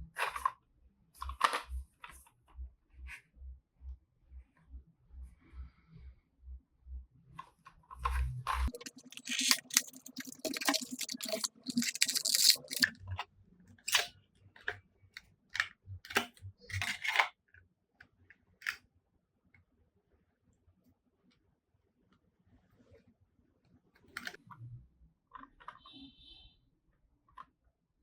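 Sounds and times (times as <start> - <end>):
packaging rustling: 8.7 - 12.9.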